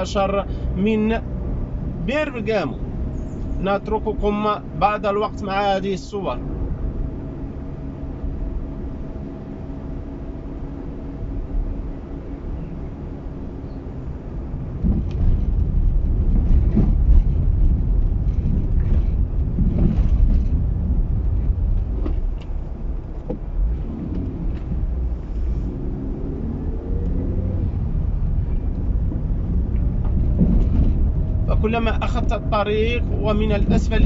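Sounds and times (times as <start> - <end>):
car engine and tyres rumbling: 0.0 - 34.0.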